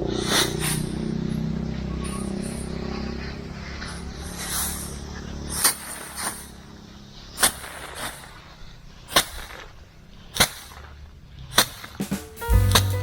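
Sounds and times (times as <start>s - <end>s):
low hum: 0.0s - 7.4s
sharp knocks or slaps: 11.6s - 13.0s.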